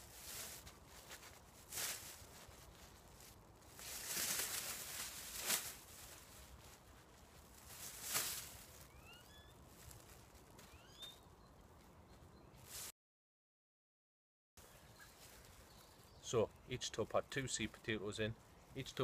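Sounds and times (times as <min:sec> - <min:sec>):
plastic bag rustling: 0:00.0 - 0:10.6
bird chirping: 0:08.8 - 0:09.7, 0:10.6 - 0:12.6, 0:14.6 - 0:16.8.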